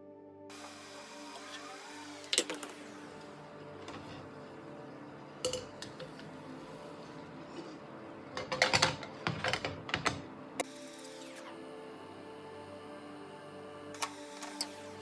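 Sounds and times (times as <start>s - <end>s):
quiet background music: 0.0s - 15.0s
kitchen utensils clattering: 5.4s - 6.4s, 7.5s - 10.4s.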